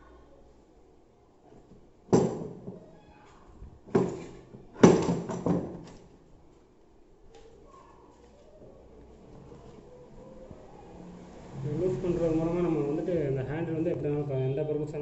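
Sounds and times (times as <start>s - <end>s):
rattling knocks: 3.9s - 6.0s.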